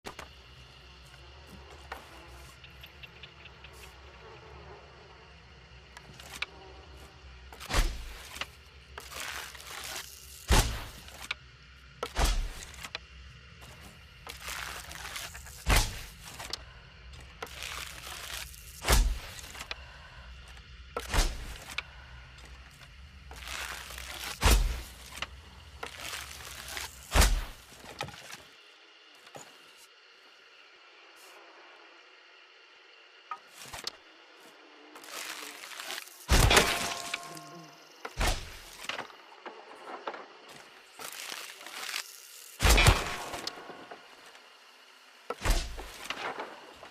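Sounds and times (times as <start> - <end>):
low steady hum: 0.1 - 46.9
arrow thuds: 10.5 - 11.0, 12.0 - 12.7, 15.6 - 16.1, 18.8 - 19.4, 27.1 - 27.6, 38.2 - 38.7, 45.4 - 46.4
bow shot thwack: 10.5 - 11.0, 12.0 - 12.6, 27.1 - 27.6, 45.4 - 46.0.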